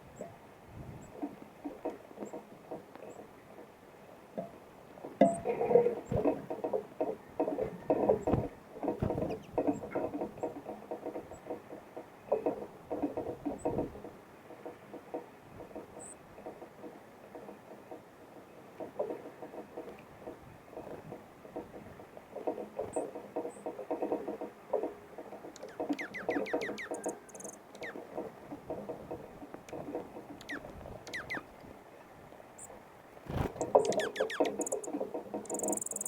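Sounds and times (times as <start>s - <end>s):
birds pecking seed: 4.9s - 36.0s
high bird chip calls: 25.6s - 28.1s, 30.4s - 31.5s, 33.6s - 36.0s.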